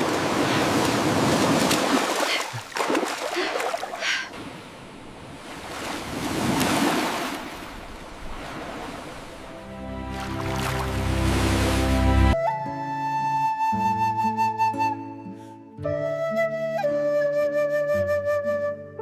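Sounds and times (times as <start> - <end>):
rushing water: 0.0 - 12.4.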